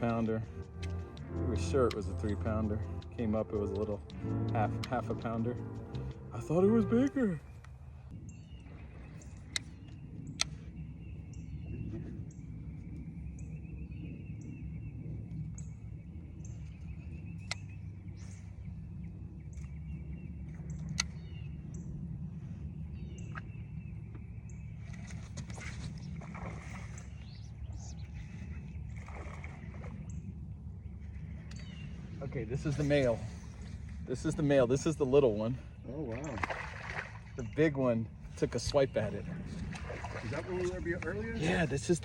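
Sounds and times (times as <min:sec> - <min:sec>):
steady low rumble: 0:00.0 - 0:42.0
sharp clicks: 0:10.4 - 0:10.6
bird chirping: 0:22.7 - 0:42.0.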